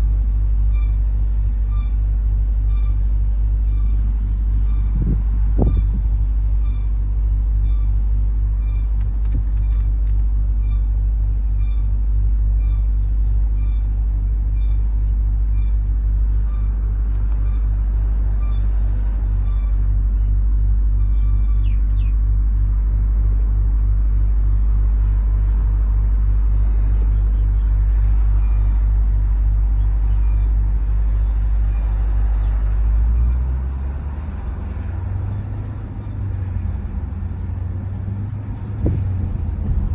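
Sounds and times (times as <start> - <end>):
car driving rumble: 0.0 - 39.9
high-pitched squeak: 2.7 - 3.0, 3.7 - 7.0, 8.6 - 10.0.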